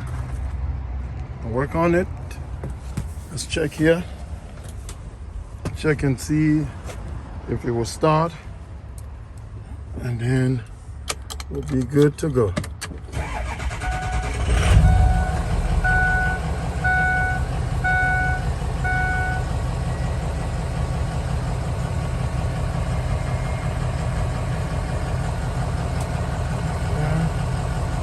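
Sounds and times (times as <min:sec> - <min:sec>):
van engine idling: 0:13.1 - 0:28.0
dashboard warning chime: 0:13.8 - 0:19.4.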